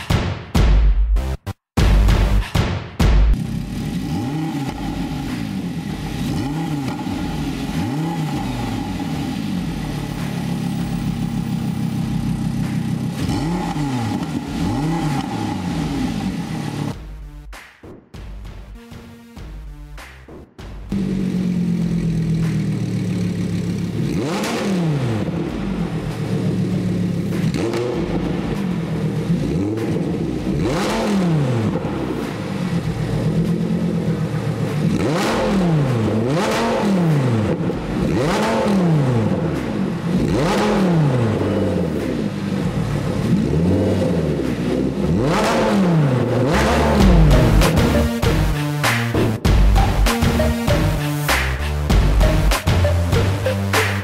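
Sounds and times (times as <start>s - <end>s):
car engine idling: 3.3s - 17.5s, 20.8s - 24.3s, 25.0s - 30.8s
engine revving blips: 3.3s - 17.5s, 20.9s - 54.0s.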